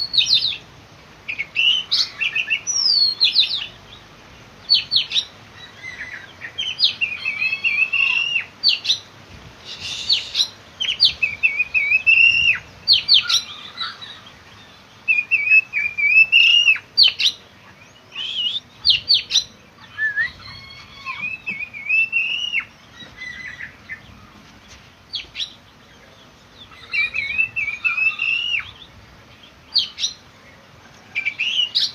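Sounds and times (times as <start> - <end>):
bird singing whistled phrases: 1.3 - 3.7, 4.7 - 9.0, 9.6 - 14.2, 15.1 - 17.4, 18.1 - 23.8, 26.7 - 28.9, 31.2 - 31.9.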